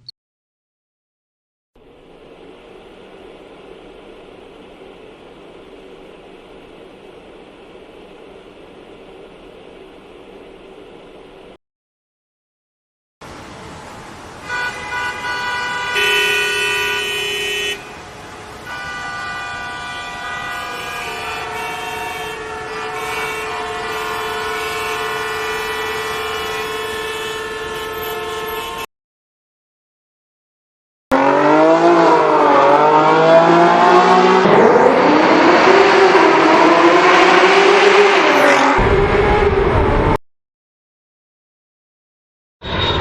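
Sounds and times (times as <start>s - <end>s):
car horns honking: 14.4s - 28.9s, 34.0s - 39.0s.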